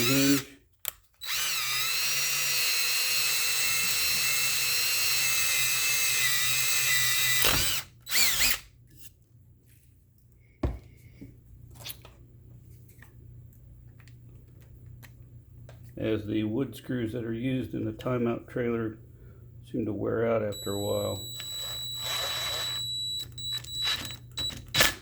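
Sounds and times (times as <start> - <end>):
power drill drilling wood: 0.0 - 0.4, 1.2 - 8.6, 20.6 - 25.0.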